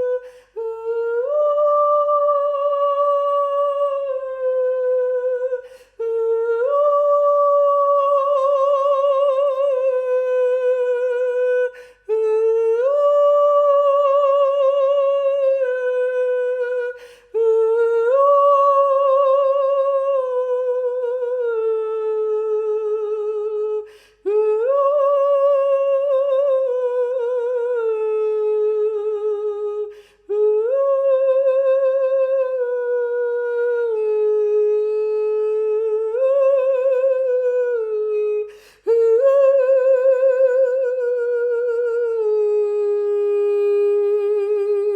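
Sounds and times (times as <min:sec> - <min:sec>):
person singing wordless tones: 0:00.0 - 0:44.9
person breathing: 0:00.2 - 0:00.6, 0:05.6 - 0:06.0, 0:11.7 - 0:12.1, 0:17.0 - 0:17.4, 0:23.8 - 0:24.3, 0:29.9 - 0:30.3, 0:38.5 - 0:38.9.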